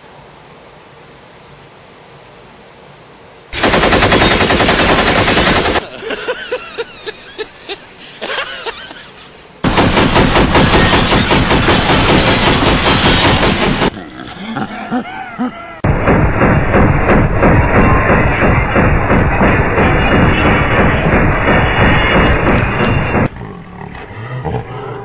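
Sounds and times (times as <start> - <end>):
automatic gunfire: 3.6 - 5.9, 9.6 - 13.9, 15.8 - 23.3.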